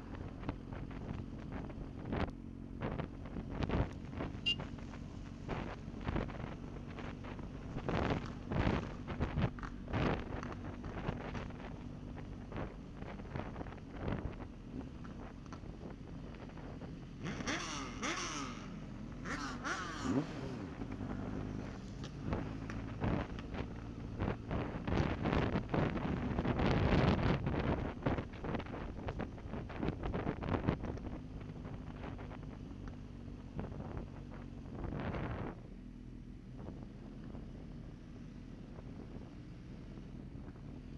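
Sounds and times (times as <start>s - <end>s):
vehicle engines revving: 0.0s - 35.8s
wind buffeting microphone: 20.9s - 32.7s.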